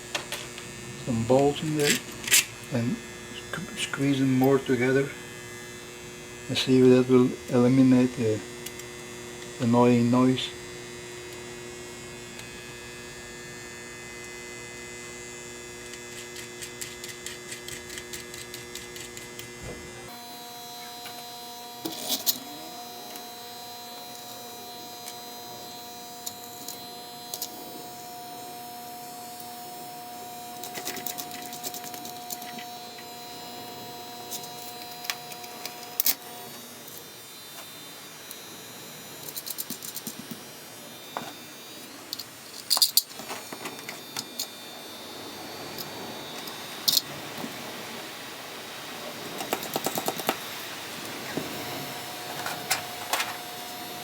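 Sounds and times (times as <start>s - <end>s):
transformer humming and buzzing: 0.0s - 54.0s
faint steady tones: 19.4s - 54.0s.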